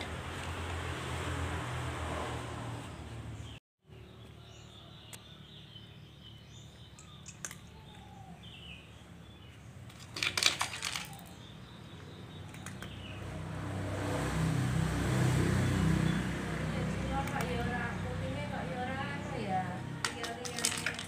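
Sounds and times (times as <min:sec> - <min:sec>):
clinking and rattling: 0:09.9 - 0:11.4, 0:20.0 - 0:21.0.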